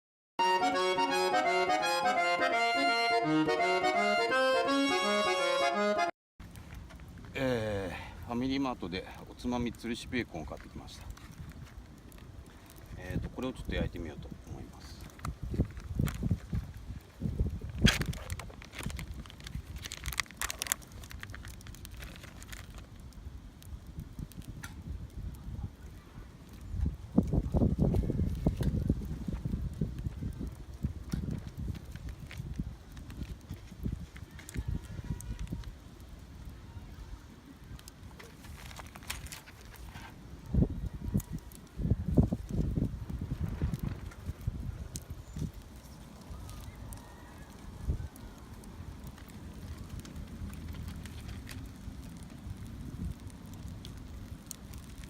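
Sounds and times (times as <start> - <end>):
lively accordion tune: 0.4 - 6.2
plastic packaging crinkling: 17.5 - 23.0, 38.1 - 40.1, 49.0 - 53.1.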